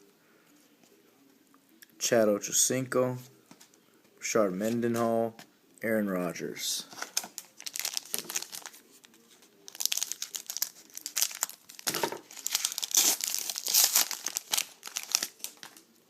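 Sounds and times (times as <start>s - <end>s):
wrapper being torn and crinkled: 7.0s - 15.9s.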